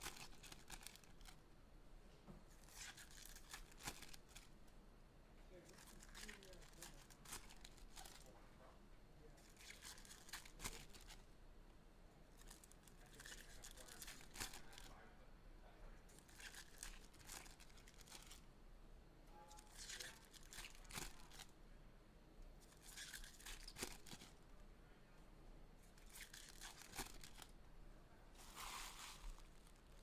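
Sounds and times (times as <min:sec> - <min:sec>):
foil wrappers tearing and crinkling: 0:00.0 - 0:01.3, 0:02.6 - 0:04.5, 0:05.7 - 0:08.2, 0:09.5 - 0:11.2, 0:12.4 - 0:14.9, 0:16.2 - 0:18.4, 0:19.7 - 0:21.4, 0:22.8 - 0:24.3, 0:26.1 - 0:27.5, 0:28.4 - 0:30.0.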